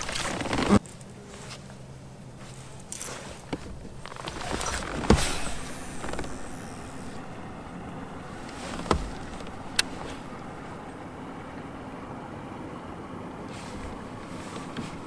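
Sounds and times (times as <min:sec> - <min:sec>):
rustling sloshing water: 0:00.0 - 0:11.5.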